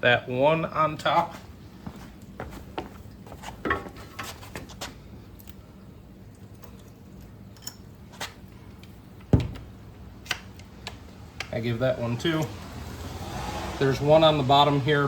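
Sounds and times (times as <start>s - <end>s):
loud thump: 9.3s - 9.7s.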